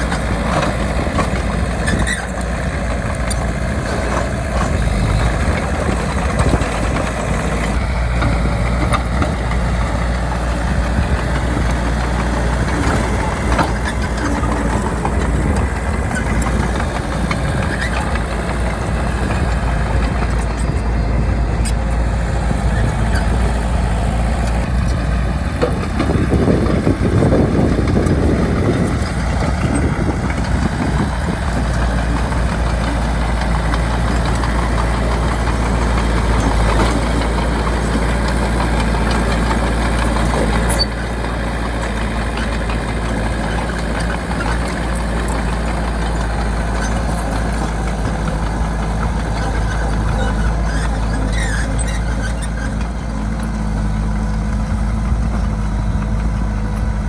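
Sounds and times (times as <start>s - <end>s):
bulldozer diesel engine running: 0.0s - 57.0s.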